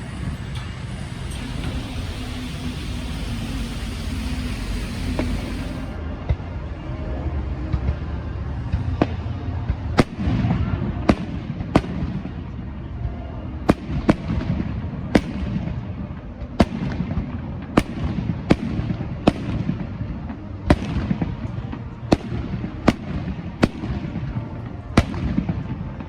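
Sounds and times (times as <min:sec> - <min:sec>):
fireworks bangs: 0:00.0 - 0:06.0
low rumble: 0:00.0 - 0:06.4.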